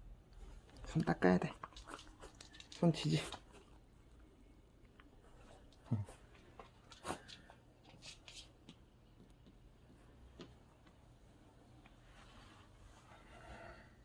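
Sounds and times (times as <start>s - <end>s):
faint rustles: 11.2s - 14.0s.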